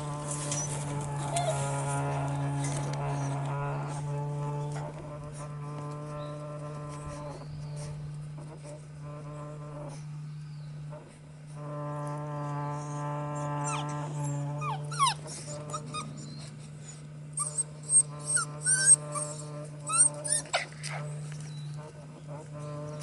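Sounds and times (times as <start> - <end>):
puppies yipping and squealing: 0.0 - 1.8, 14.6 - 21.1
steady low hum: 0.0 - 23.0.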